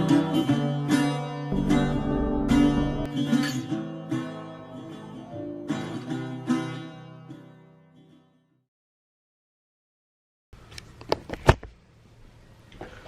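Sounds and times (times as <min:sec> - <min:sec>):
acoustic guitar music: 0:00.0 - 0:08.4
low bass note: 0:01.5 - 0:03.1.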